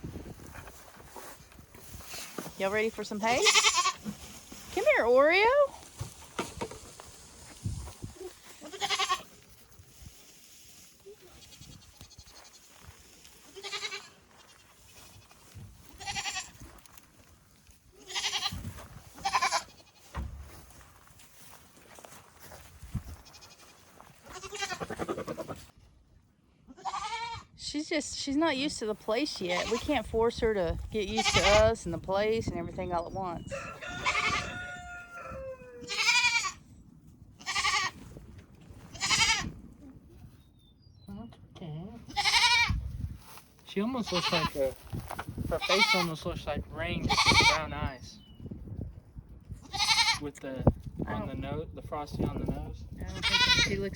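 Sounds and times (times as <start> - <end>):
goats bleating: 3.2 - 4.1, 8.4 - 9.4, 13.4 - 16.6, 18.0 - 18.6, 19.2 - 20.1, 23.2 - 25.6, 26.7 - 27.5, 31.2 - 31.8, 33.9 - 34.8, 35.8 - 36.6, 37.4 - 38.0, 38.9 - 39.5, 42.1 - 42.8, 44.0 - 44.6, 45.6 - 46.1, 47.0 - 47.7, 49.6 - 50.2, 53.1 - 53.8.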